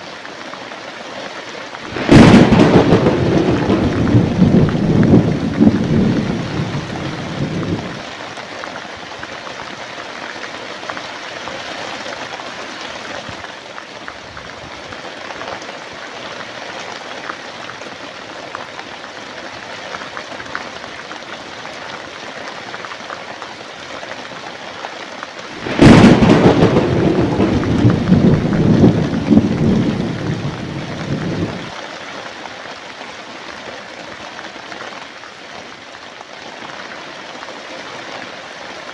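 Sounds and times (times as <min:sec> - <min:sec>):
steady rain falling: 0:00.0 - 0:38.9
thunder rumble: 0:01.8 - 0:08.0, 0:25.6 - 0:31.7
sharp thunderclap: 0:01.9 - 0:08.0, 0:25.6 - 0:31.7.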